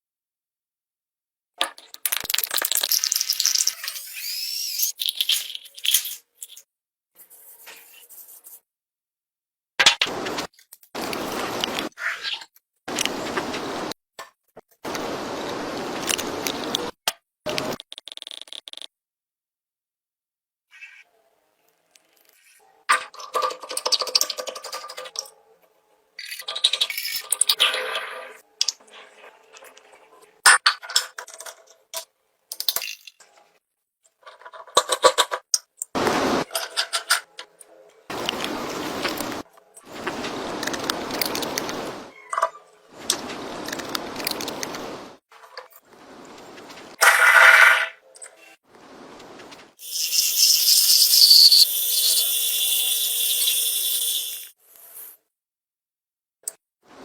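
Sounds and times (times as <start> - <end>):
metal parts clinking and scraping: 49.8 - 54.5
short hissing burst: 49.8 - 55.2.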